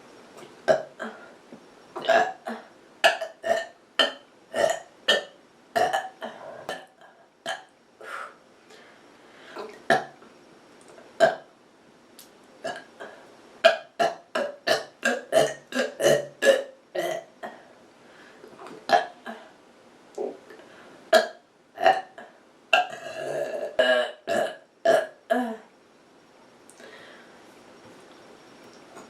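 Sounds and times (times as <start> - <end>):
person burping: 0.7 - 1.3, 2.0 - 7.7, 11.2 - 11.5, 12.6 - 17.6, 18.9 - 19.4, 21.1 - 25.7.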